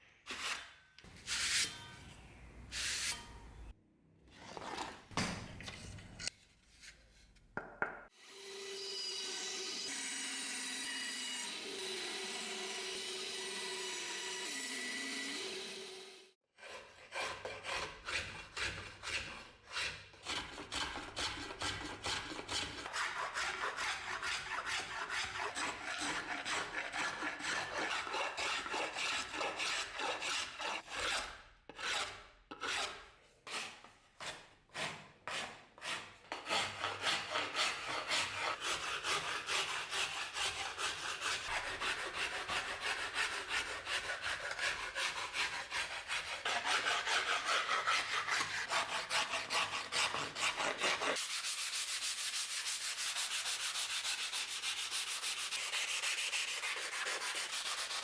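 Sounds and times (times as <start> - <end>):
hand file strokes: 0.3 - 1.9, 16.6 - 58.0.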